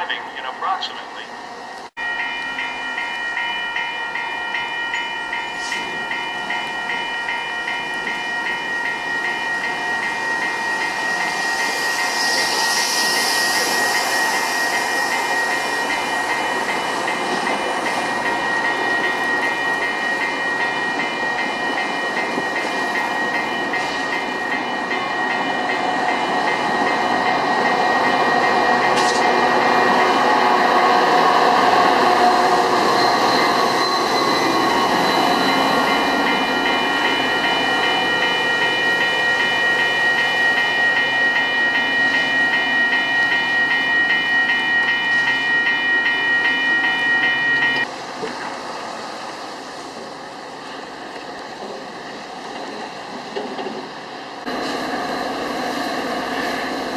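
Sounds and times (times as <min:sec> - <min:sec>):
train rumble: 0:00.0 - 0:56.9
rapidly repeating ringing tone: 0:32.8 - 0:47.9.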